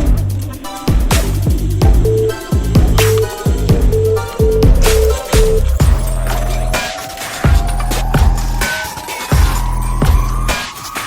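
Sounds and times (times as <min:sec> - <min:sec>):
electronic music with heavy beat: 0:00.0 - 0:11.0
rising synth tone: 0:02.0 - 0:10.7.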